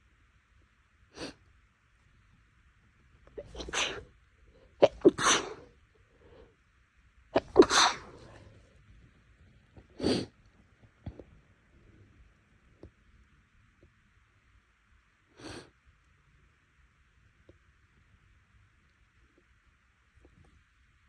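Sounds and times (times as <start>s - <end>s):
person sneezing: 3.4s - 4.1s, 4.8s - 5.7s, 7.4s - 8.5s.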